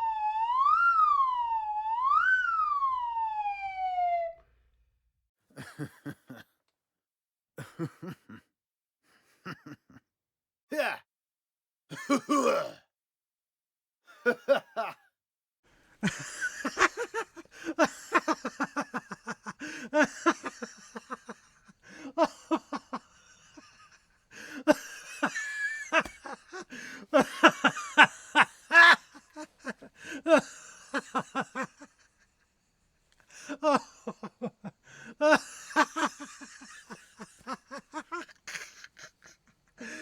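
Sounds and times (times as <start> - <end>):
person laughing: 11.9 - 12.7, 14.2 - 15.0, 16.0 - 32.2, 33.3 - 40.0.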